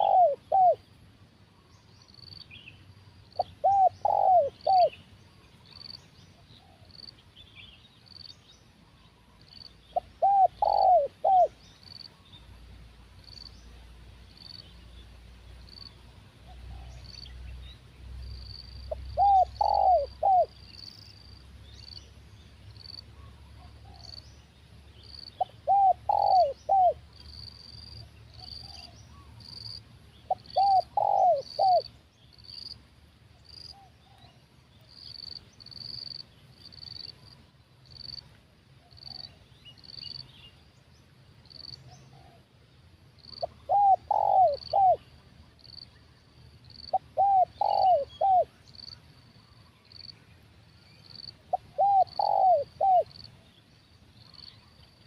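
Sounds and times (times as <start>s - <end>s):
dove cooing: 0.0s - 0.8s, 3.4s - 5.0s, 9.9s - 11.6s, 18.9s - 20.6s, 25.3s - 27.0s, 28.4s - 29.3s, 30.3s - 31.9s, 41.9s - 42.4s, 43.2s - 45.1s, 46.9s - 48.6s, 51.5s - 53.2s.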